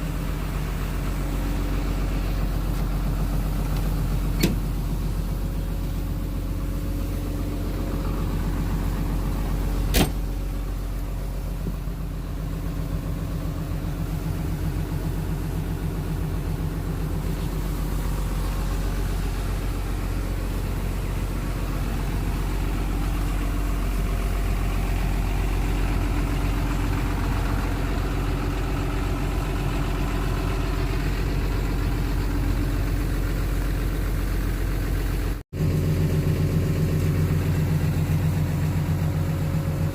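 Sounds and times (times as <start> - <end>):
diesel engine idling: 0.0 - 39.9.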